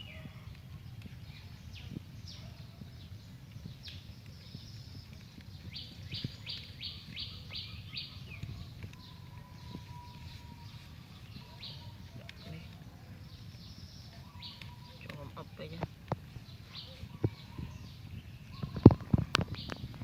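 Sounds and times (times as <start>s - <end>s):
birds chirping: 0.0s - 20.0s.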